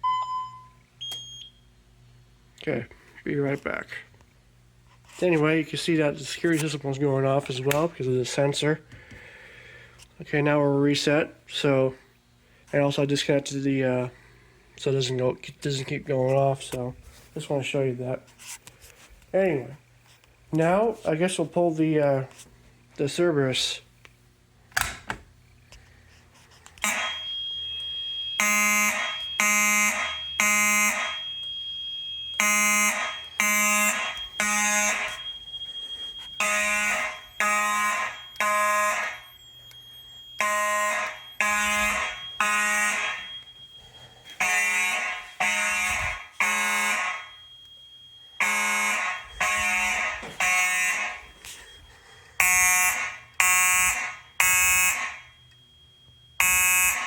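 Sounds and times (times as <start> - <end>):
fire alarm pull station click: 1.0 - 1.5, 24.7 - 25.3, 26.7 - 35.6, 36.2 - 43.7, 52.4 - 55.7
fire alarm horns blasting: 25.8 - 57.0
steady high-pitched tone: 26.7 - 57.0.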